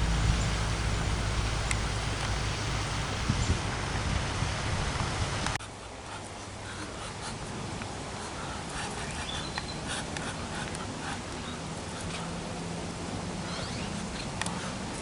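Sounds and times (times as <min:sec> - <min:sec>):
low steady hum: 0:00.0 - 0:15.0
outdoor background noise: 0:00.0 - 0:15.0
bird calls: 0:08.2 - 0:12.2, 0:13.4 - 0:14.7.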